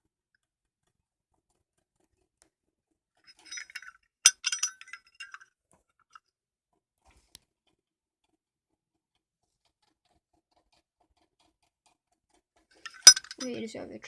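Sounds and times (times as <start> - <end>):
metal lighter cases clinking: 3.3 - 5.4, 12.8 - 13.5.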